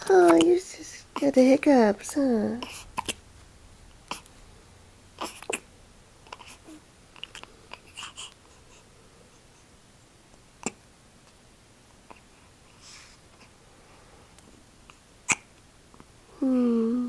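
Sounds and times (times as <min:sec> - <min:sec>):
baby hiccuping: 0:02.6 - 0:03.2, 0:04.0 - 0:04.3, 0:05.2 - 0:08.4, 0:10.6 - 0:10.9, 0:15.2 - 0:15.6
faint breathy sounds: 0:12.0 - 0:15.5, 0:16.2 - 0:17.0.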